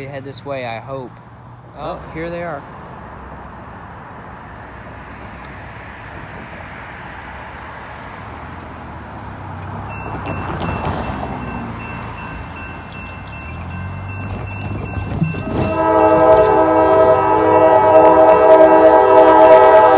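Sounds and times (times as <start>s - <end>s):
diesel locomotive engine rumble: 0.0s - 19.9s
high ringing tone: 9.9s - 17.3s.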